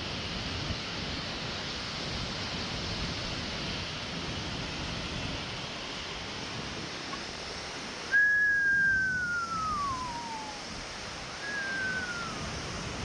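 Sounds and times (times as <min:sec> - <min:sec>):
waterfall rushing: 0:00.0 - 0:13.0
long whistles sliding down: 0:08.0 - 0:13.0.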